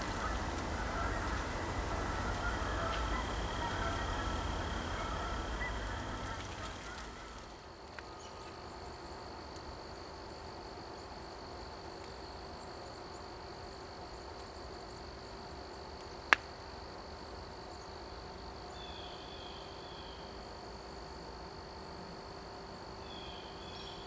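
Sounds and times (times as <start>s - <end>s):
steady high-pitched drone: 0.0s - 7.7s
faint bird call: 0.0s - 8.6s.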